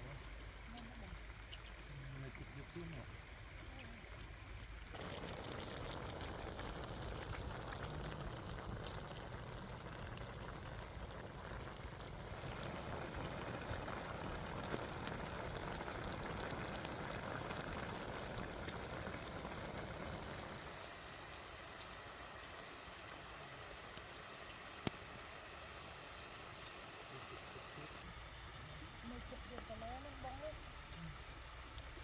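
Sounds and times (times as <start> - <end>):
pot bubbling: 0.0 - 32.0
small ticks: 0.7 - 1.9, 21.7 - 22.5.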